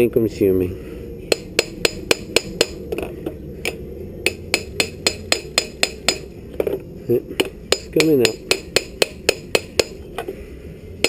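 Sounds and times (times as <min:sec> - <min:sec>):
hammer tapping on metal exhaust: 0:01.3 - 0:06.8, 0:07.4 - 0:10.0.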